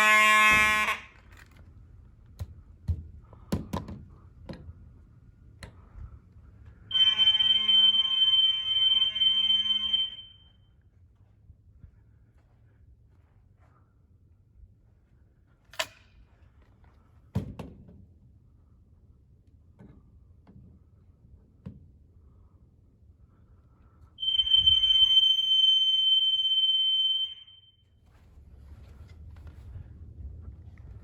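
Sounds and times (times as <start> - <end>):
fire alarm horn tone: 0.0 - 1.2, 6.9 - 10.6, 24.2 - 28.0.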